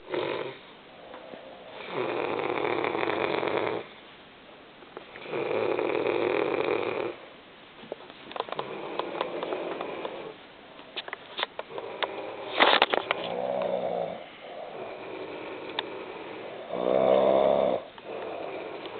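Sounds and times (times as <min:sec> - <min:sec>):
person snoring: 0:00.0 - 0:03.9, 0:11.7 - 0:12.6, 0:13.2 - 0:18.9.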